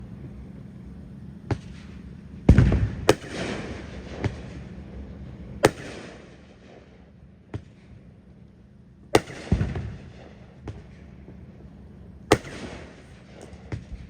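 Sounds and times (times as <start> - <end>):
firework bangs: 1.5 - 4.7, 5.6 - 7.8, 9.2 - 11.1, 12.3 - 14.0.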